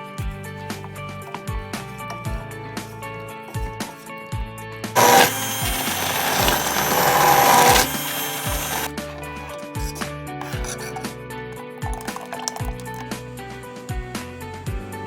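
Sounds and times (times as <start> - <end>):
background music: 0.0 - 15.0
electric blender running: 5.0 - 8.9.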